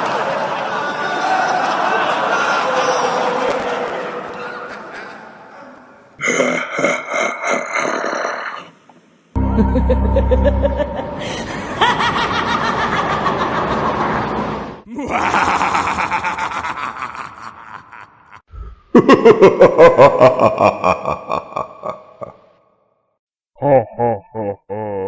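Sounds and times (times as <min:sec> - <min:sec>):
person laughing: 0:06.2 - 0:08.6, 0:09.4 - 0:13.7, 0:14.9 - 0:22.4, 0:23.6 - 0:25.0.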